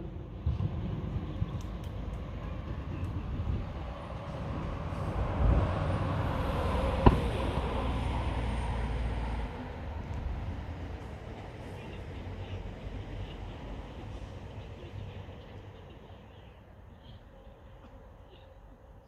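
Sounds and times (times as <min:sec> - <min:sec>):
fireworks rumble: 0:00.0 - 0:12.6
fireworks crack: 0:04.3 - 0:09.4.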